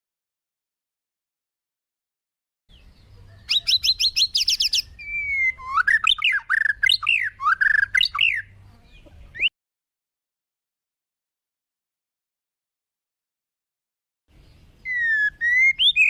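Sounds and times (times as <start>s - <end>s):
bird chirps and whistles: 3.5s - 8.5s, 14.8s - 16.0s.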